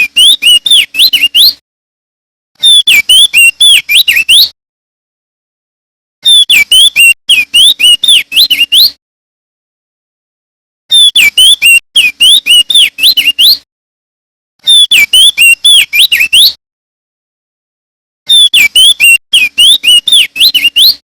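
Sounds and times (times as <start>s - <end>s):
bird whistling song: 0.0s - 1.6s, 2.6s - 4.6s, 6.2s - 9.0s, 10.9s - 13.6s, 14.6s - 16.6s, 18.3s - 21.0s.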